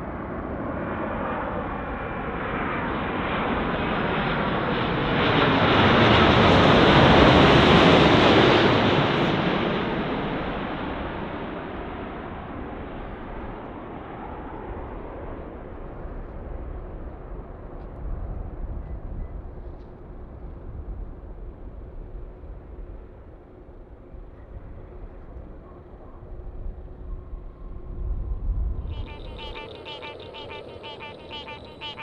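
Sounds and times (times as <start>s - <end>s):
jet engines roaring: 2.8s - 11.8s, 28.9s - 32.0s
faint steady whine: 24.3s - 32.0s.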